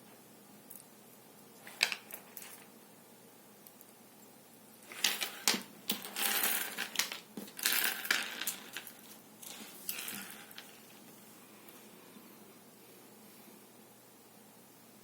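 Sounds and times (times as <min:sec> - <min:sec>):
rustling and scraping: 0:04.8 - 0:11.9.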